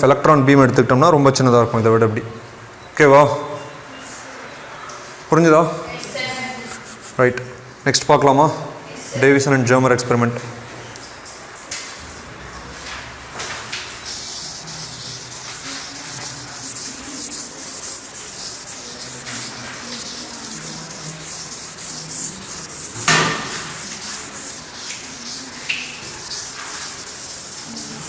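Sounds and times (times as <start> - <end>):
scratching strokes on a board: 5.9 - 7.2, 14.0 - 28.0
sharp knock: 23.0 - 23.7.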